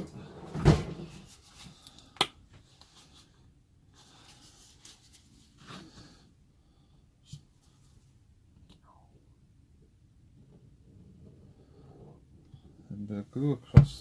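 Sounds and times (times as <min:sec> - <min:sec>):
rustling: 0:04.0 - 0:06.2
loud thump: 0:13.8 - 0:14.0.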